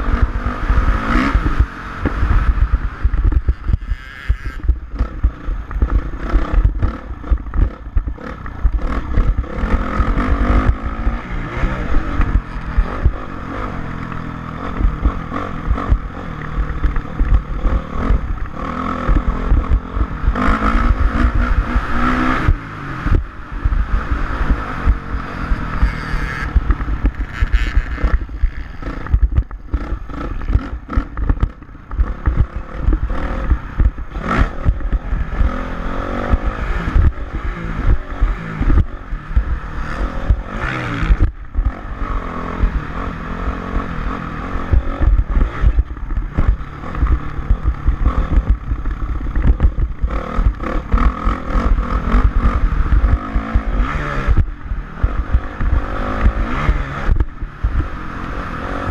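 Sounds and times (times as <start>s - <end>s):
dirt bike engine revving: 0.0s - 58.9s.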